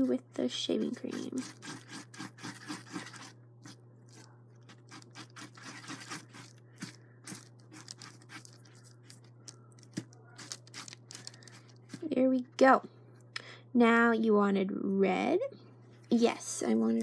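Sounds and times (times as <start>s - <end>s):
low steady hum: 0.0s - 17.0s
stick scraping while mixing: 0.7s - 12.2s.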